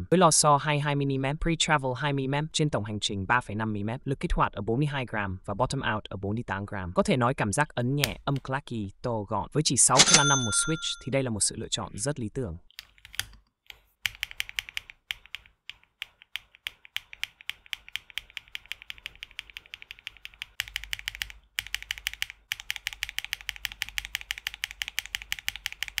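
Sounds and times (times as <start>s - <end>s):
mechanical keyboard typing: 12.8s - 26.0s.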